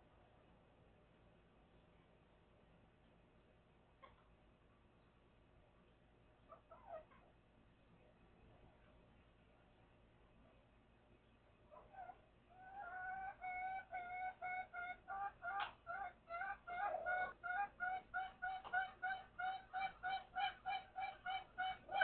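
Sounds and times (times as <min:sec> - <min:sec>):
chicken clucking: 0:11.8 - 0:22.0.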